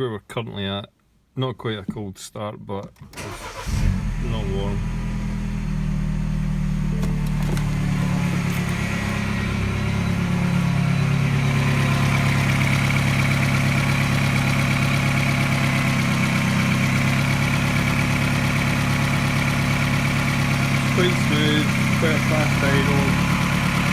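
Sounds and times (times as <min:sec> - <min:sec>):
car engine idling: 0:03.2 - 0:23.9.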